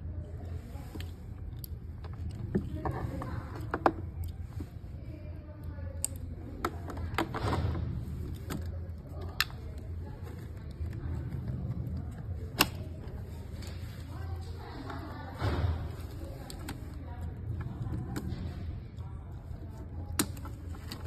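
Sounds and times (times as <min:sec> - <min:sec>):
low steady hum: 0:00.0 - 0:21.0.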